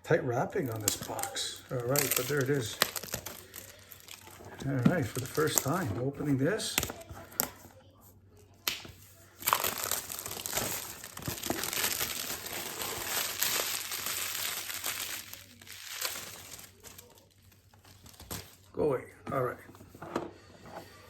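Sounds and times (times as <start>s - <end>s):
plastic wrap crinkling and tearing: 0.6s - 5.9s, 8.7s - 18.7s
wrapping crackling: 0.6s - 7.6s, 8.4s - 18.8s.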